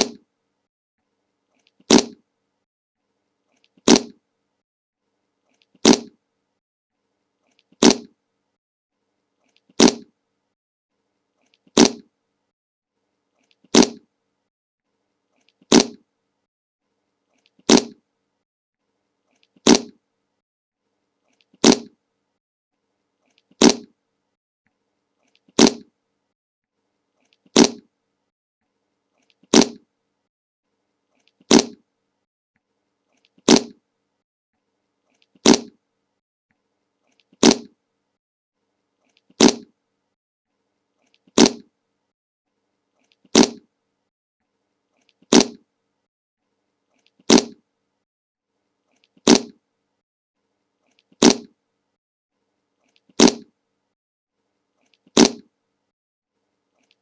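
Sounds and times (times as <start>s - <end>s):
fart sound effect: 0.0s - 0.2s, 1.9s - 2.2s, 3.8s - 4.2s, 5.8s - 6.2s, 7.8s - 8.1s, 9.8s - 10.1s, 11.7s - 12.1s, 13.7s - 14.1s, 15.7s - 16.0s, 17.7s - 18.0s, 19.6s - 20.0s, 21.6s - 22.0s, 23.6s - 23.9s, 25.6s - 25.9s, 27.5s - 27.9s, 29.5s - 29.8s, 31.5s - 31.8s, 33.4s - 33.8s, 35.4s - 35.8s, 37.4s - 37.7s, 39.4s - 39.7s, 41.4s - 41.7s, 43.3s - 43.6s, 45.3s - 45.6s, 47.3s - 47.6s, 49.2s - 49.6s, 51.2s - 51.5s, 53.2s - 53.5s, 55.2s - 55.5s.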